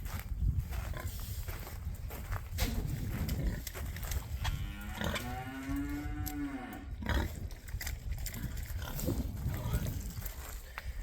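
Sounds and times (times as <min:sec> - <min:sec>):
cow mooing: 0:04.5 - 0:07.0.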